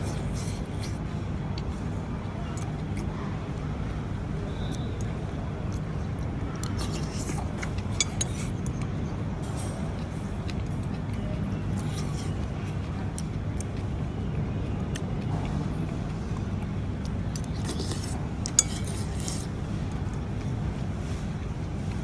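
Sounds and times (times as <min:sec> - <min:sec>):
soft chewing: 0:00.0 - 0:22.0
cutlery clinking on dishes: 0:06.8 - 0:08.8, 0:17.4 - 0:19.5.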